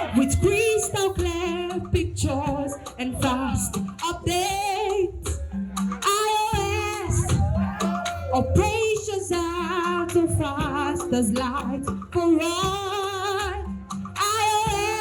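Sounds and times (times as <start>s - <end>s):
backing track with beat and bass: 0.0s - 15.0s
person singing with vibrato: 6.1s - 15.0s.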